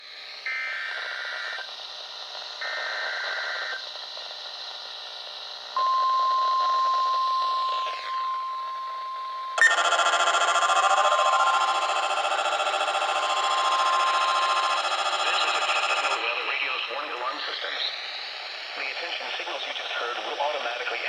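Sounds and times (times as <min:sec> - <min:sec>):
steady warning alarm tone: 0:00.4 - 0:01.7, 0:02.6 - 0:03.9, 0:05.8 - 0:21.0
buzzy data tones: 0:05.8 - 0:21.0
rapidly pulsing alert sound: 0:09.6 - 0:16.4.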